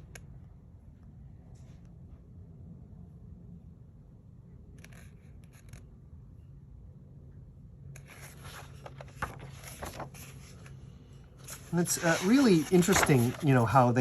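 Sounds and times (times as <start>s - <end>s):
book pages rustling: 8.0s - 14.0s.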